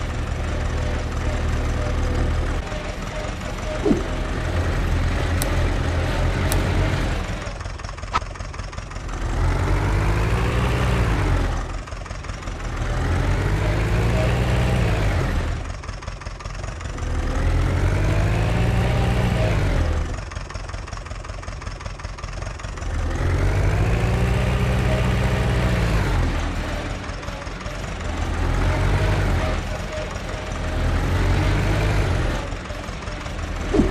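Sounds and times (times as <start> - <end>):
tractor engine revving: 0.0 - 7.8, 9.0 - 11.8, 22.8 - 33.9.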